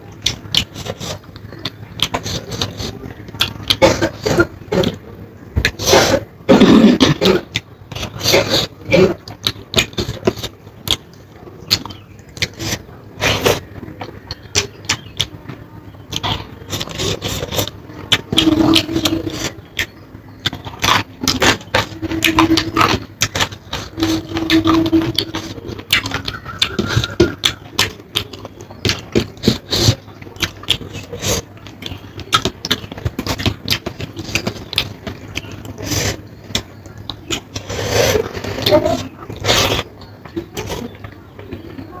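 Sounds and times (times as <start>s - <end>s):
low hums: 0.0s - 42.0s
chewing and mouth smacks: 16.1s - 41.6s
food scraping on plate: 21.2s - 25.7s.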